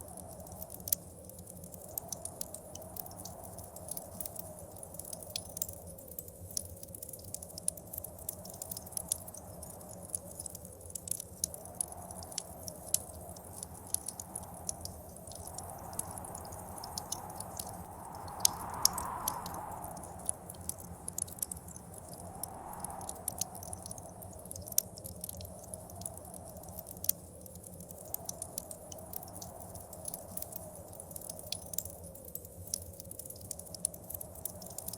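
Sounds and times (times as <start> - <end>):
wood fire crackling and popping: 0.0 - 34.9
whistling blizzard wind: 11.5 - 24.7.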